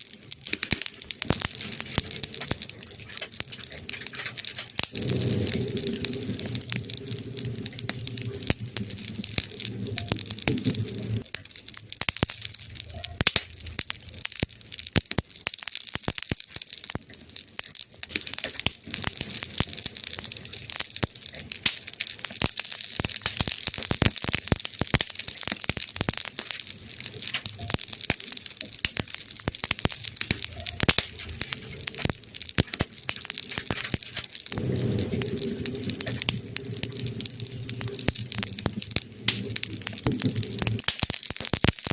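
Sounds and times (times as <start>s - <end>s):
campfire crackling and popping: 0.0s - 41.9s
low rumble: 1.3s - 11.4s, 33.3s - 40.8s.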